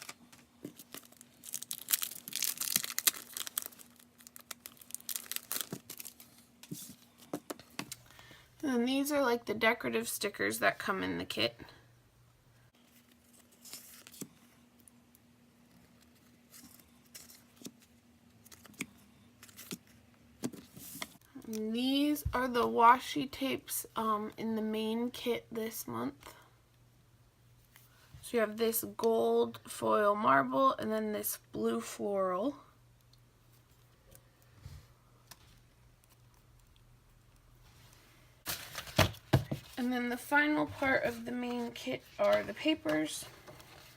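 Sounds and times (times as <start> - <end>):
packaging rustling: 0.0 - 8.1, 38.5 - 39.8
faint steady hum: 0.0 - 43.9
clatter and rustle of items: 37.6 - 39.8.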